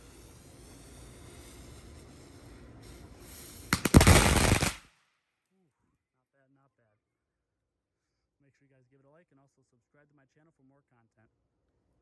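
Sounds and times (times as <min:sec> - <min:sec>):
firecrackers banging: 0:03.7 - 0:04.8.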